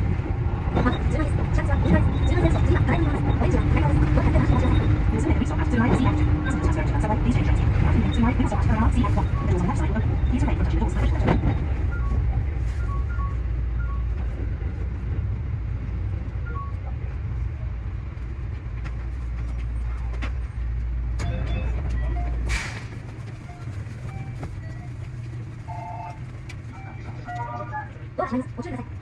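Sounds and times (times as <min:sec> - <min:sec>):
electric train rumbling on rails: 0:00.0 - 0:29.0.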